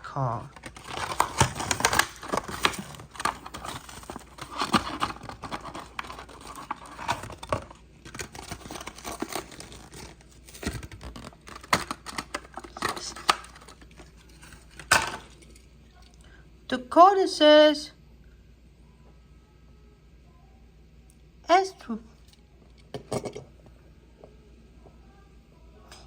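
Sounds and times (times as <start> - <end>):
plastic blister packaging crackling: 0.4 - 15.4.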